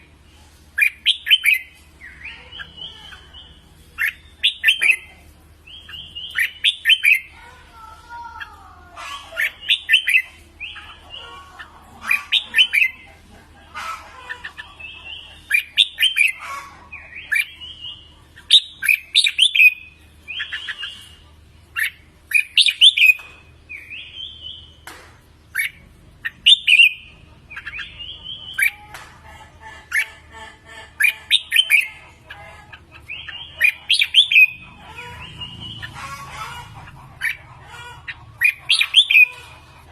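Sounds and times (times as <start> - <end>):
bird singing whistled phrases: 18.5 - 21.2, 26.5 - 27.0.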